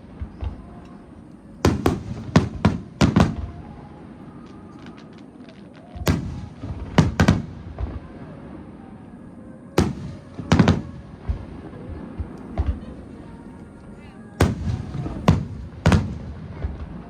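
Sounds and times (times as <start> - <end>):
firework booms: 0.0 - 9.0, 9.8 - 13.4, 14.4 - 17.0
small firework pops: 0.1 - 3.8, 4.4 - 8.1.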